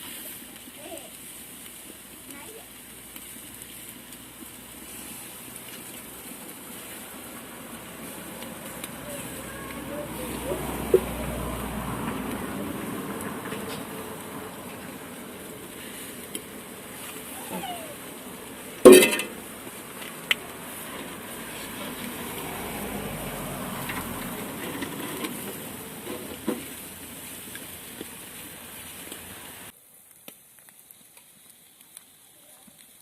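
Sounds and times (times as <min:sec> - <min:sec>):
chicken sizzling on a grill: 0:00.0 - 0:33.0.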